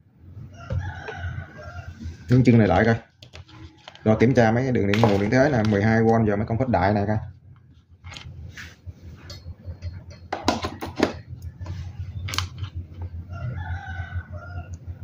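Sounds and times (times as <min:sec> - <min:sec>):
low steady hum: 0:00.0 - 0:15.0
rooster crowing: 0:00.4 - 0:02.5, 0:13.2 - 0:15.0.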